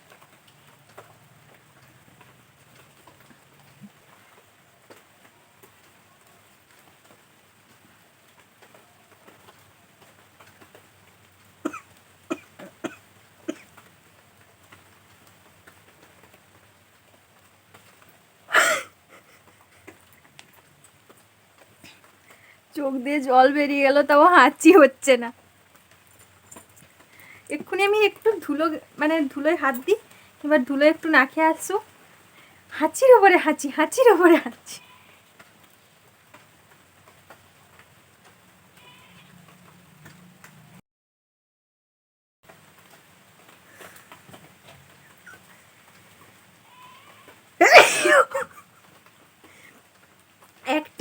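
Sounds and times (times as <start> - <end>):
faint ticks and clicks: 0.0 - 18.3, 19.1 - 22.8, 25.3 - 32.8, 34.4 - 40.8, 42.5 - 47.6
woman forcing a breath burst: 18.5 - 19.3.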